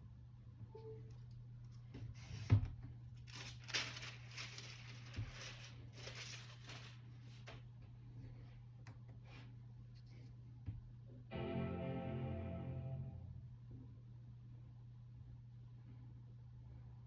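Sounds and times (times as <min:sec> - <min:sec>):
packaging wrapping rustling and tearing: 0:03.2 - 0:07.6.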